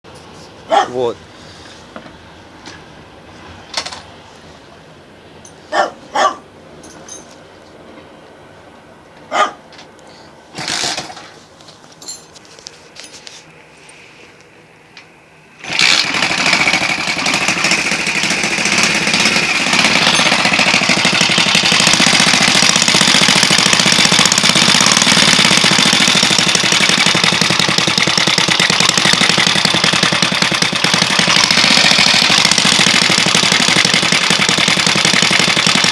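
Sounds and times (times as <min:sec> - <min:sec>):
moped engine knocking: 0:15.8 - 0:35.9.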